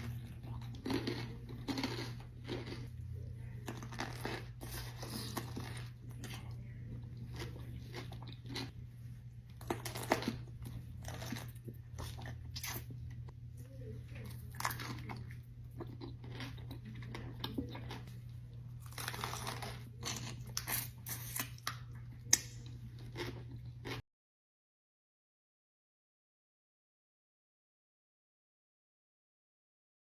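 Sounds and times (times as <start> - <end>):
crunchy chewing: 0.0 - 8.8, 9.4 - 13.2, 14.1 - 24.0
steady low hum: 0.0 - 24.0.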